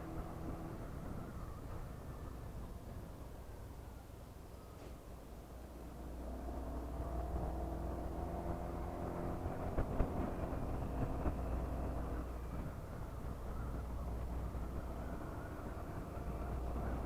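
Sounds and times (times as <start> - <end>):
road rumble: 0.0 - 17.0
wind: 0.0 - 17.0
scooter engine running: 5.8 - 17.0.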